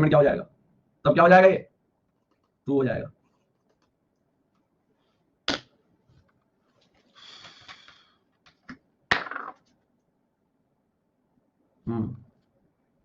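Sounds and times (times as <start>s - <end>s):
short hissing rustle: 7.0s - 8.2s.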